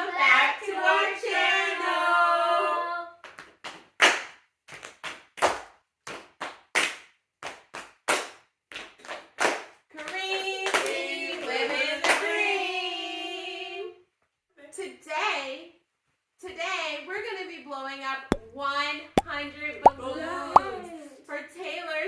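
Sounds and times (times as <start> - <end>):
hand claps: 3.2 - 11.0.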